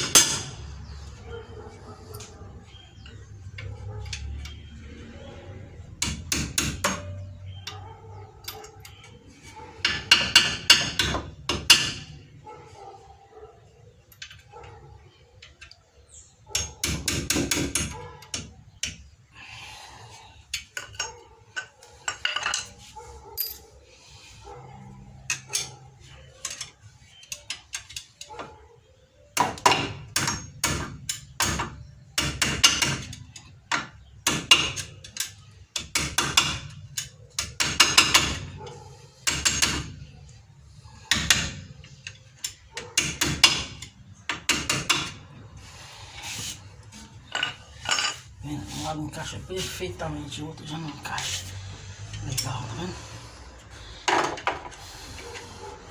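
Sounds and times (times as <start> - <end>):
metal tapping and clinking: 0.0 - 0.6, 20.5 - 23.7, 47.1 - 48.4.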